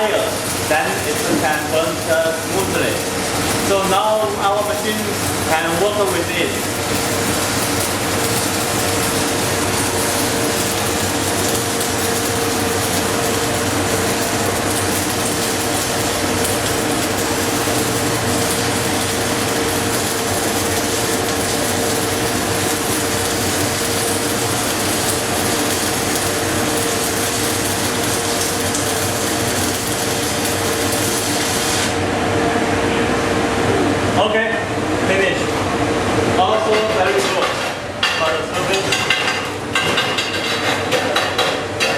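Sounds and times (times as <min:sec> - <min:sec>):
welding arc crackling: 0:00.0 - 0:32.1.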